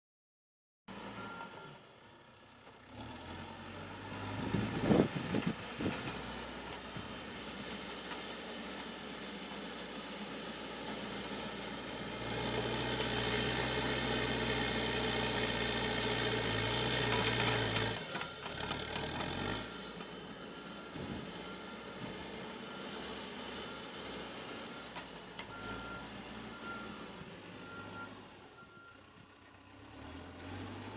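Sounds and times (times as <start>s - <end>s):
diesel engine running: 0.9s - 30.9s
reversing beeper: 19.5s - 23.9s.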